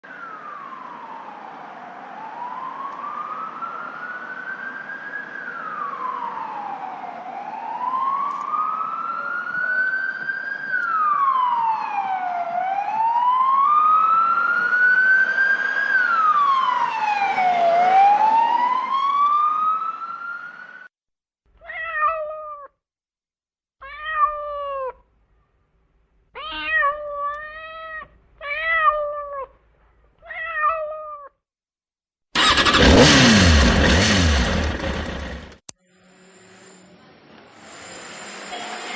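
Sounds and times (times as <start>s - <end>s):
emergency vehicle siren wailing: 0.0s - 20.9s, 32.4s - 35.3s
cat meowing: 21.6s - 22.8s, 23.8s - 25.0s, 26.4s - 29.5s, 30.2s - 31.4s.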